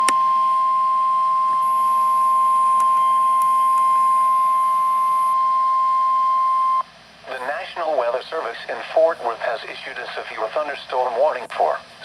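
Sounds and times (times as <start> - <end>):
steady warning alarm tone: 0.0 - 6.9.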